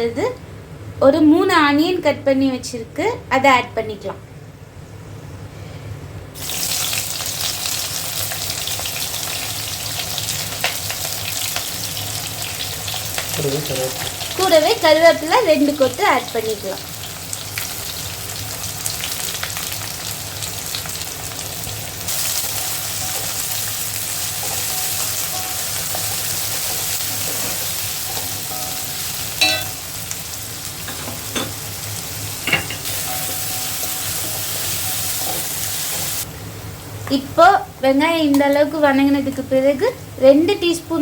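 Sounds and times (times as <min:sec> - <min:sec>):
onions sizzling in hot oil: 0:06.4 - 0:36.3
spoon knocking against pan: 0:28.5 - 0:29.8, 0:32.5 - 0:33.5.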